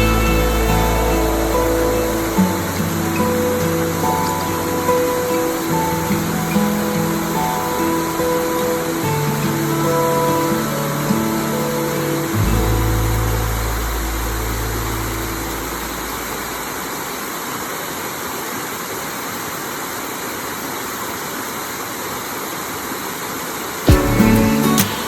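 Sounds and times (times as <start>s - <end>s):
guitar music: 0.0s - 16.6s, 23.9s - 25.0s
waterfall rushing: 0.0s - 25.0s.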